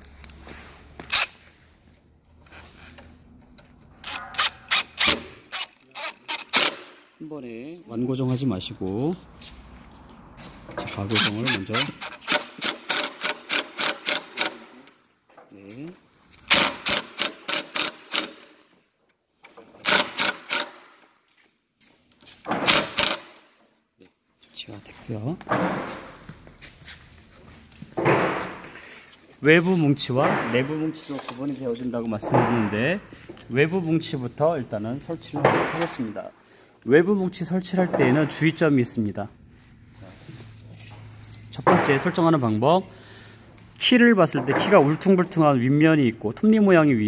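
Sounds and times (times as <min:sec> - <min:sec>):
scrapes and clicks of screws: 0:01.0 - 0:01.5, 0:02.4 - 0:06.9, 0:10.8 - 0:15.1, 0:16.3 - 0:18.6, 0:19.4 - 0:21.2, 0:22.1 - 0:23.5
metal hardware scraping: 0:02.4 - 0:07.1, 0:10.4 - 0:14.9, 0:40.0 - 0:42.2.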